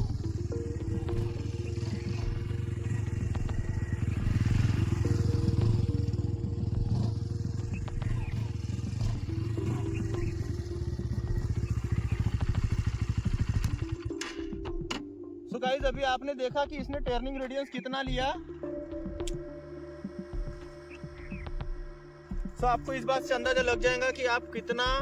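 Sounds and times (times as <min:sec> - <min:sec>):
motorcycle engine at low speed: 0:00.0 - 0:15.1, 0:18.1 - 0:25.0.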